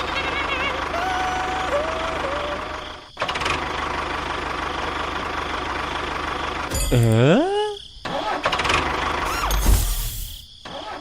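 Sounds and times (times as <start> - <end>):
tractor engine idling: 0.0 - 7.2, 8.0 - 9.4.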